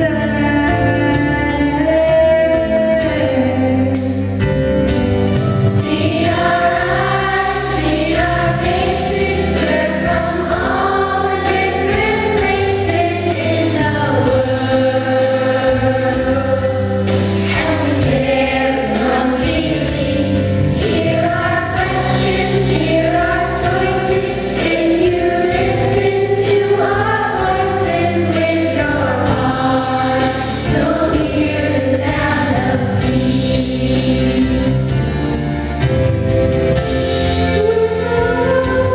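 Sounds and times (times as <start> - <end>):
instrumental backing with steady beat: 0.0 - 38.9
group of voices singing: 5.6 - 35.1, 37.5 - 38.9.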